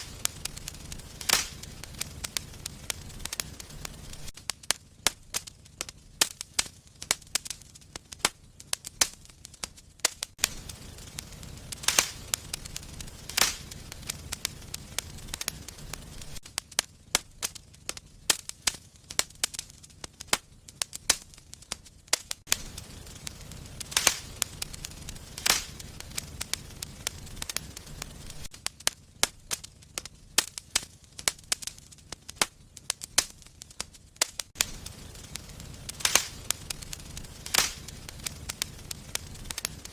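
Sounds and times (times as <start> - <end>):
wood fire crackling and popping: 0.0 - 39.9.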